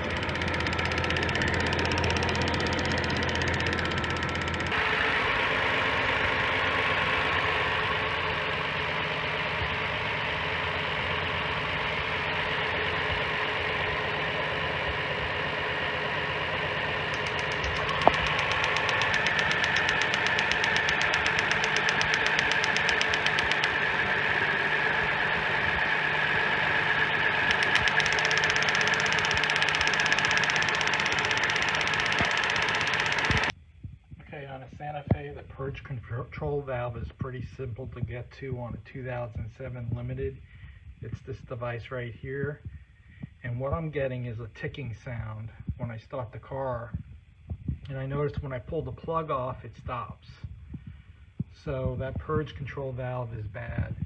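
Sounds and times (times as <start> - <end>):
rapid ticking from engine bay: 0.0 - 4.8, 17.1 - 23.9, 27.3 - 33.5
car engine running: 0.0 - 14.0, 16.3 - 33.5
sharp click: 17.1 - 23.9, 27.3 - 33.5.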